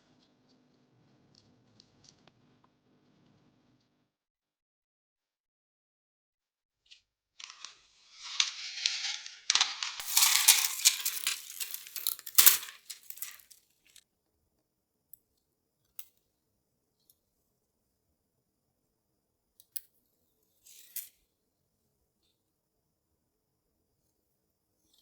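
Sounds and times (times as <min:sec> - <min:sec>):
crinkling rustling handling noise: 0:07.4 - 0:13.6
sharp clicks of parts: 0:09.5 - 0:13.5.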